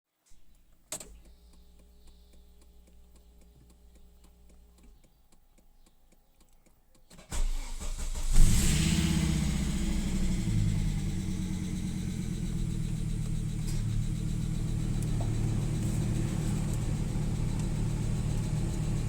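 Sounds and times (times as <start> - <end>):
light ticking: 0.7 - 7.2, 11.6 - 19.0
car engine cranking and running: 7.1 - 19.0.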